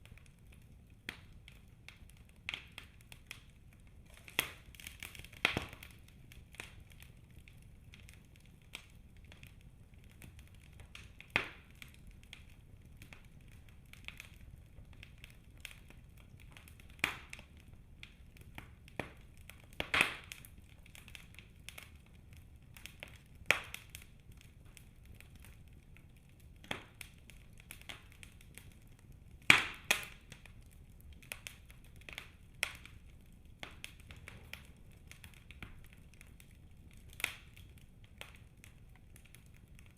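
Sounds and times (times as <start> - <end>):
low rumble of flames: 0.0 - 39.9
wood fire crackling and popping: 0.0 - 39.9.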